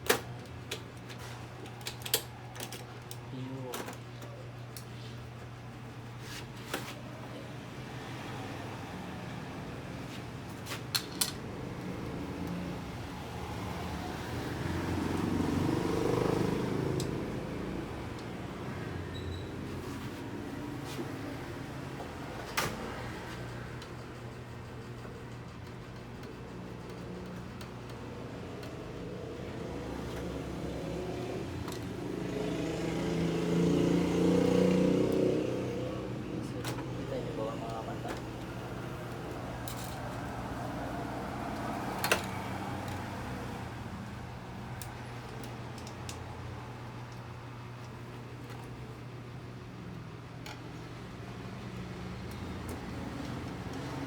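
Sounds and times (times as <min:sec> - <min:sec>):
motor vehicle passing: 0:11.6 - 0:24.2, 0:28.3 - 0:46.9.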